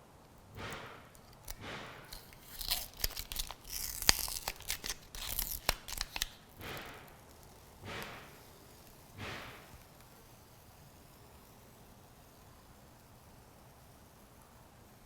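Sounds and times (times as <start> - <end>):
adhesive liner peeling: 1.2 - 7.1.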